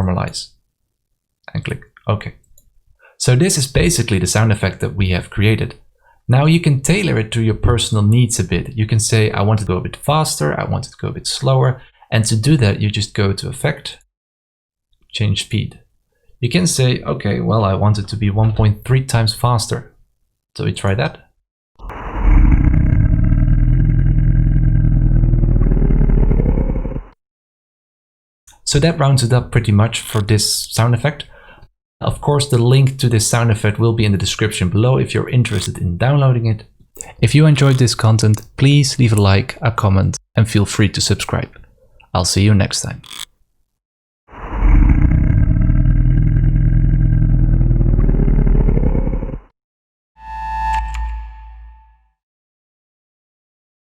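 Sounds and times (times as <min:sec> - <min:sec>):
low rough monster growl: 0:21.8 - 0:27.2, 0:44.3 - 0:49.6
deep chime: 0:50.2 - 0:52.1.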